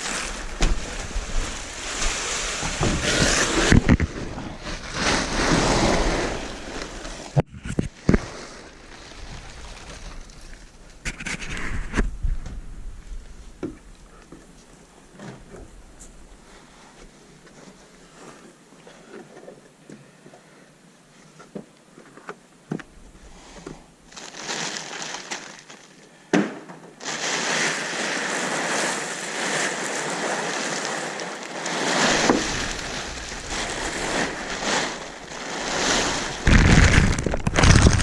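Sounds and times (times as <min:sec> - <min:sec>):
plastic sheeting rustling: 0:00.0 - 0:11.8, 0:24.1 - 0:26.0, 0:27.0 - 0:38.0.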